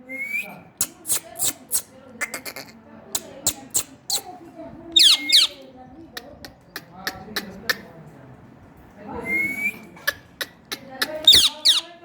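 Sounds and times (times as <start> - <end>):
parakeet chattering: 0.8 - 4.4, 5.0 - 5.6, 6.2 - 8.0, 10.0 - 12.0.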